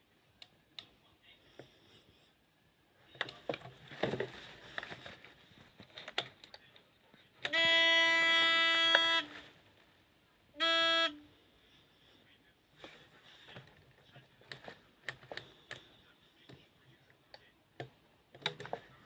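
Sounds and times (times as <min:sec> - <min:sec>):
electric buzzer horn: 0:07.5 - 0:09.4, 0:10.6 - 0:11.2.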